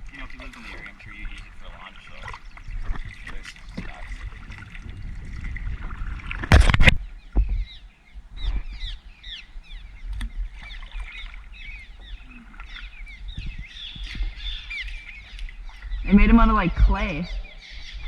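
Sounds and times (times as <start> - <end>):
swallows chattering: 0.0 - 18.0
knock on kayak: 2.2 - 7.7.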